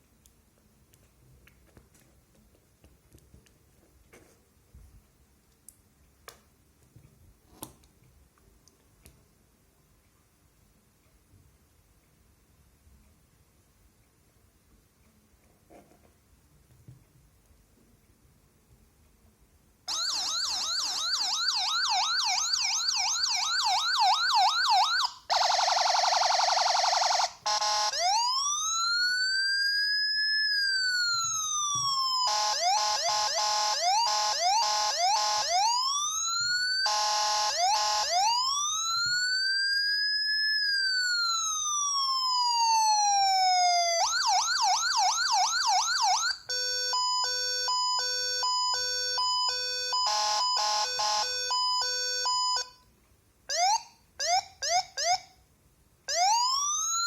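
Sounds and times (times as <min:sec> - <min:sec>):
electronic police siren: 0:19.9 - 0:52.8, 0:53.5 - 0:55.3, 0:56.1 - 0:57.0.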